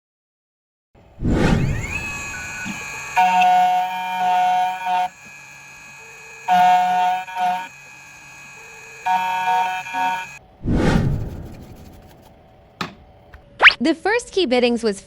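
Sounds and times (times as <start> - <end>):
electronic sustained notes: 1.6 - 10.4.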